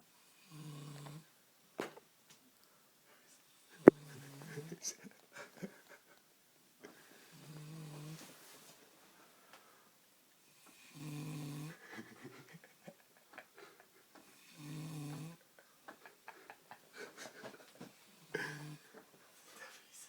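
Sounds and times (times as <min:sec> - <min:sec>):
woman snoring: 0:00.4 - 0:01.3, 0:07.3 - 0:08.2, 0:10.6 - 0:12.0, 0:14.3 - 0:15.4, 0:18.0 - 0:19.0.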